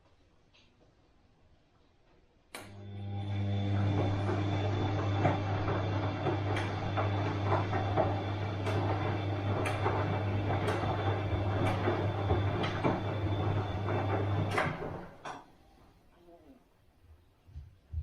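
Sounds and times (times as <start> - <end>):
washing machine motor hum: 2.6 - 15.7
washing machine drum knocking: 3.8 - 15.3.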